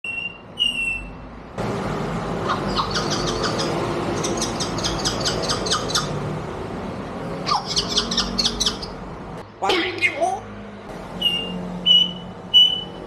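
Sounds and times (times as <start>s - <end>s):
parrot imitating engine cranking: 2.4s - 6.2s, 7.5s - 8.9s.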